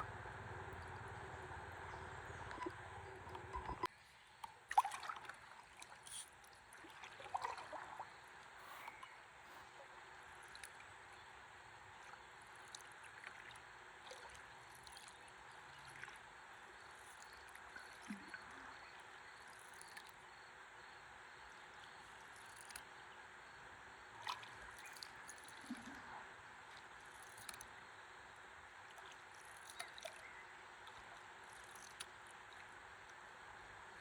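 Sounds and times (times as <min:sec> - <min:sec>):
water drips and splashes: 0:00.0 - 0:09.1, 0:10.3 - 0:11.2, 0:12.0 - 0:18.9, 0:21.7 - 0:22.9, 0:24.2 - 0:27.7, 0:28.8 - 0:33.3
river water lapping: 0:00.0 - 0:34.0.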